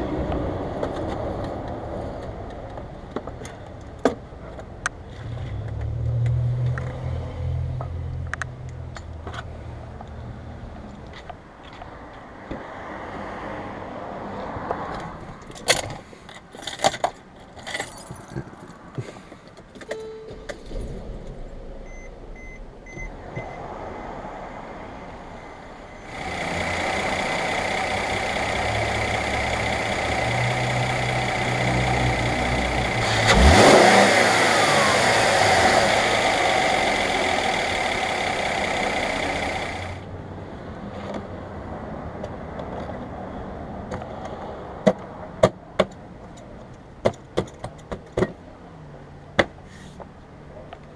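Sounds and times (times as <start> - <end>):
car engine running: 26.0 - 40.0.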